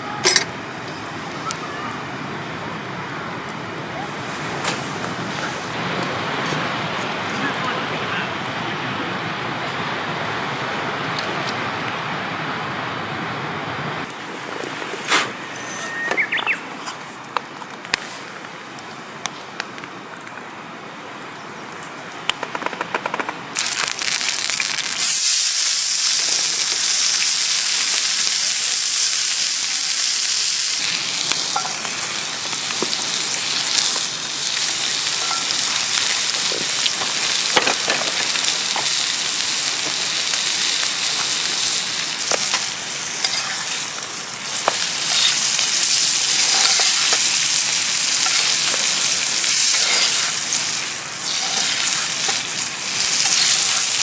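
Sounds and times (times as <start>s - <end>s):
fat popping and crackling: 21.7s - 54.0s
steak sizzling in a pan: 23.6s - 54.0s.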